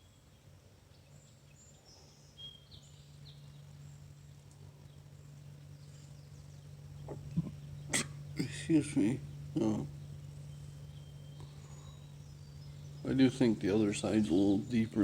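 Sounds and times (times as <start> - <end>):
steady low hum: 0.0 - 15.0
faint high chirps: 9.7 - 13.4.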